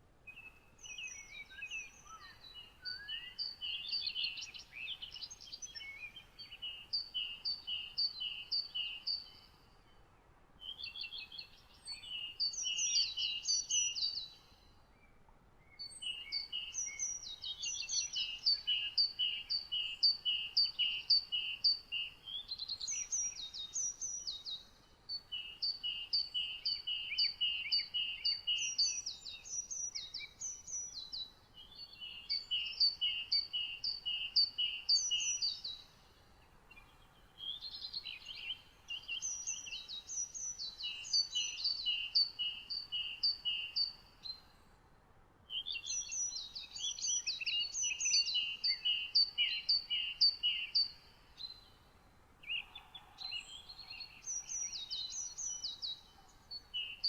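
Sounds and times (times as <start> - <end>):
faint steady hiss: 0.0 - 57.0
songbirds singing: 0.0 - 57.0.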